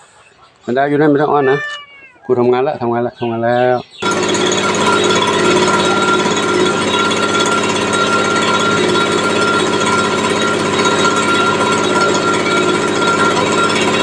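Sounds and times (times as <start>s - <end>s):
leaf blower running: 4.0s - 14.0s.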